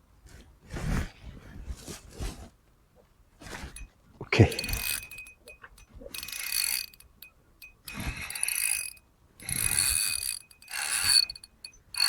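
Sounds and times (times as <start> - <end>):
fishing reel gears whirring: 4.5 - 12.0.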